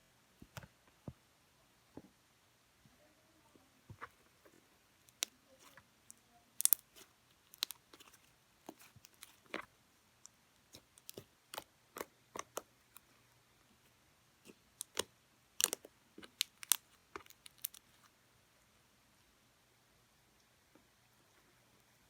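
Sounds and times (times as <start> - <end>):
slime squishing and clicking: 5.1 - 5.3, 6.6 - 9.7, 10.7 - 12.7, 14.5 - 17.8.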